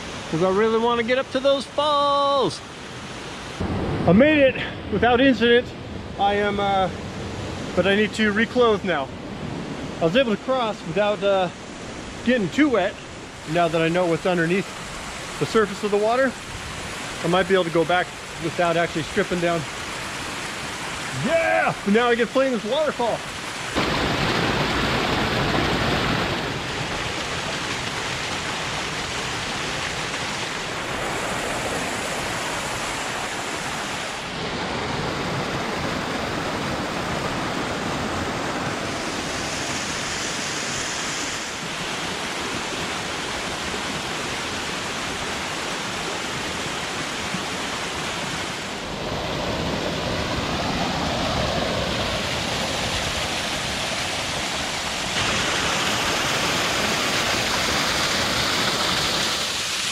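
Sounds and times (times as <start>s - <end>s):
waterfall rushing: 9.5s - 59.9s.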